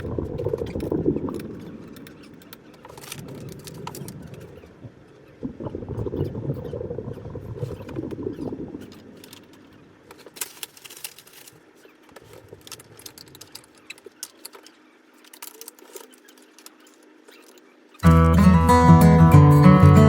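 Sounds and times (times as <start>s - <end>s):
low rustling handling noise: 0.0s - 5.4s, 7.5s - 18.6s
light clicks and rattles: 8.8s - 18.0s.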